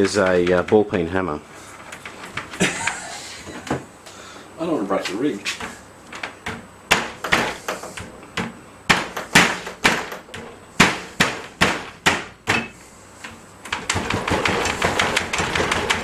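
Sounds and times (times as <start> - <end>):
sharp knocks and bangs: 5.6 - 12.8, 13.7 - 16.0.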